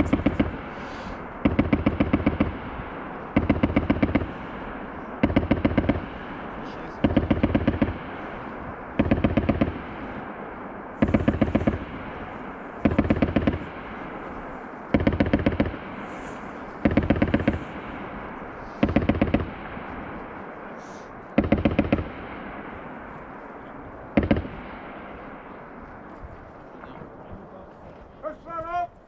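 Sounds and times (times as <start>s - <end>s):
machine gun firing bursts: 0.0s - 8.3s, 9.0s - 10.2s, 11.0s - 20.2s, 21.3s - 22.9s, 24.2s - 25.3s
rolling echo of gunfire: 0.0s - 28.9s.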